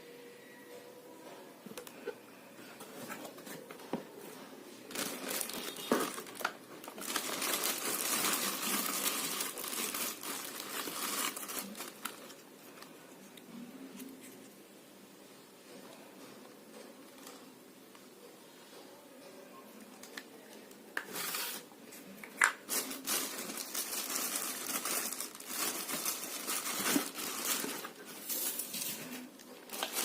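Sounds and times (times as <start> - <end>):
material crinkling and crumpling: 2.8 - 14.5, 20.0 - 30.0.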